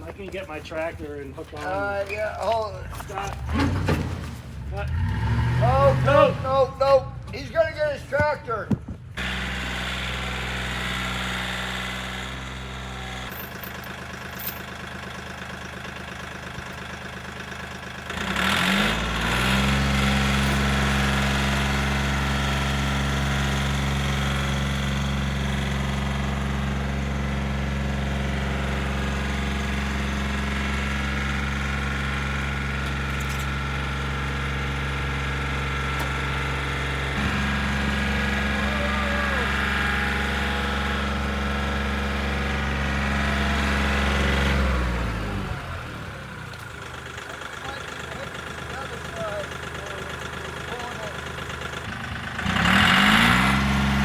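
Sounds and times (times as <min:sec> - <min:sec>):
large engine idling and revving: 0:00.0 - 0:08.2, 0:08.8 - 0:54.0.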